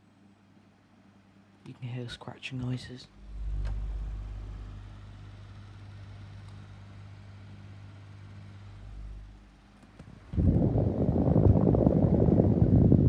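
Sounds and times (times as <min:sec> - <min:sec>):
desk fan motor hum: 0:00.2 - 0:13.0
deep rumble: 0:03.1 - 0:13.0.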